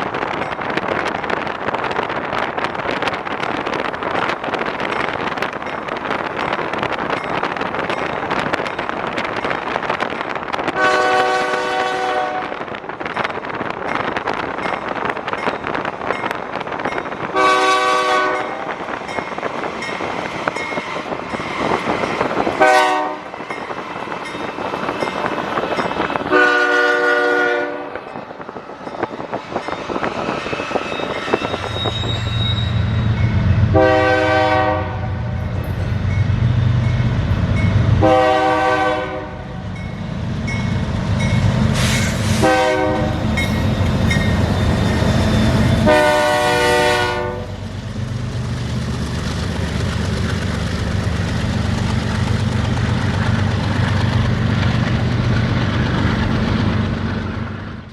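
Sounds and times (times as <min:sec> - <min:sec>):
rail and train noise: 0:00.0 - 0:57.9
locomotive horn blasts: 0:10.8 - 0:12.6, 0:17.4 - 0:18.6, 0:22.6 - 0:23.3, 0:26.3 - 0:28.0, 0:33.7 - 0:35.3, 0:38.0 - 0:39.5, 0:42.4 - 0:43.2, 0:45.8 - 0:47.6.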